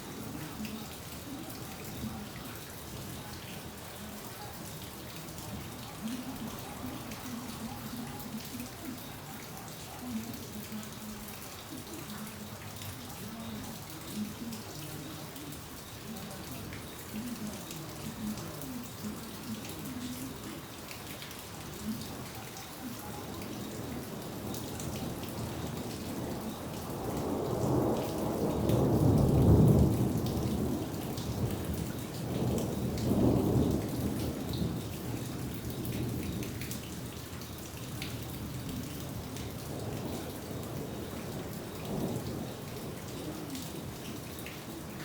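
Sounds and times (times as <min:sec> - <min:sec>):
steady rain falling: 0:00.0 - 0:45.0
rolling thunder: 0:23.2 - 0:45.0.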